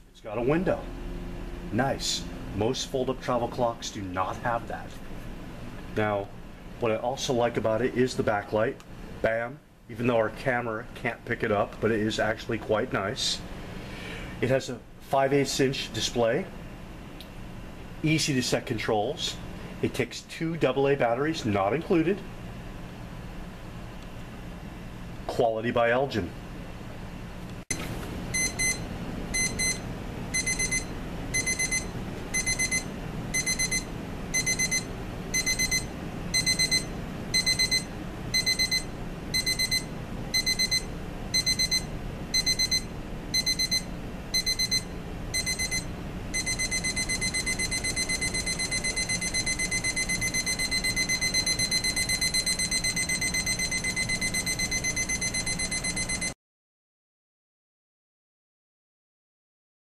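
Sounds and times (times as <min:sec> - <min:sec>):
alarm clock beeping: 0:28.3 - 0:56.4.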